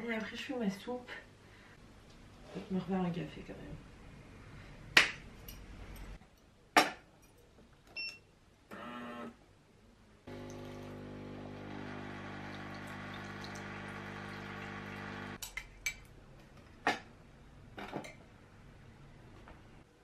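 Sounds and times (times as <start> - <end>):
coffee machine humming: 10.3 - 15.4
coffee pouring into cup: 10.3 - 15.4.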